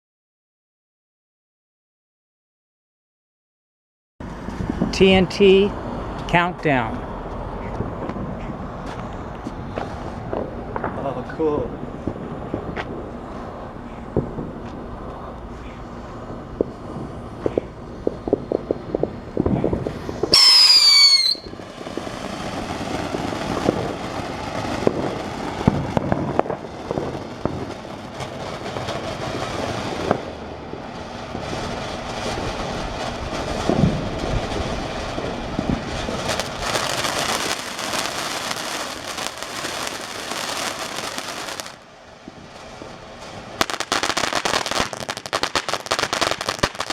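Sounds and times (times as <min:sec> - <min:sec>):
loud shrill whistle: 0:20.3 - 0:21.5
firework spraying hiss: 0:35.9 - 0:41.8, 0:42.4 - 0:46.9
crackling pops: 0:36.2 - 0:41.8, 0:43.6 - 0:46.9.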